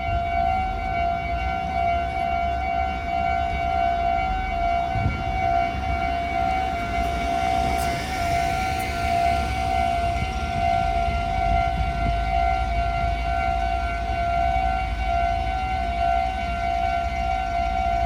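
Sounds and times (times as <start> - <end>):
level crossing alarm: 0.0 - 18.0
low rumble: 4.6 - 15.0.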